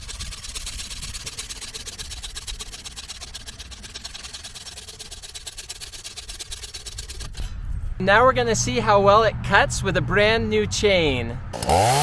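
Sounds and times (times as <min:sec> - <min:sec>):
chainsaw idling: 0:00.2 - 0:06.9, 0:11.5 - 0:12.0.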